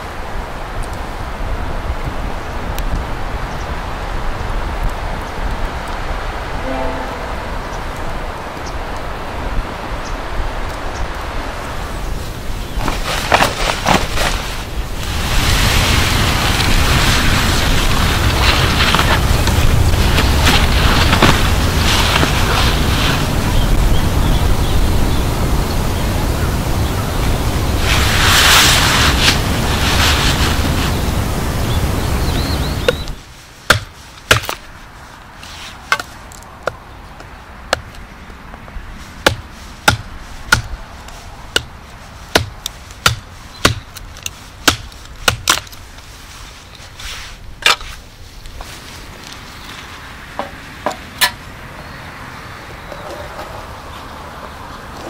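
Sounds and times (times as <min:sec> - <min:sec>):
wind buffeting microphone: 0:07.3 - 0:33.3
wood being chopped: 0:33.7 - 0:34.6, 0:37.7 - 0:38.0, 0:39.2 - 0:40.8, 0:41.5 - 0:41.7, 0:42.3 - 0:45.8.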